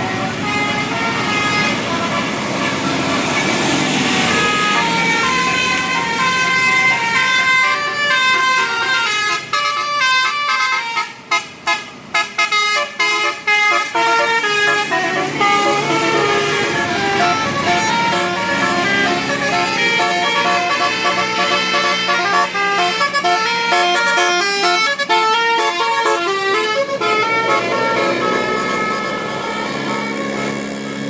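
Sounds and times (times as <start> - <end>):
bus musical horn melody: 0.0 - 31.0
road noise: 0.0 - 31.0.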